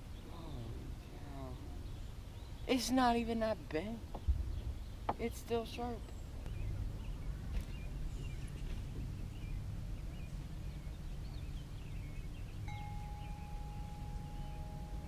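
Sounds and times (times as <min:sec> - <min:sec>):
small chirping calls: 0:04.0 - 0:15.0
steady held pitches: 0:12.6 - 0:15.0.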